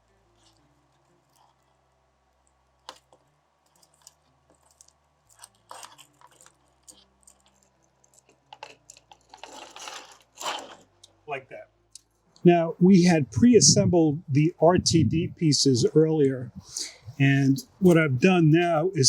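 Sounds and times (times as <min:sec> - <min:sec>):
metal strap clicking and rustling: 0:02.9 - 0:11.2.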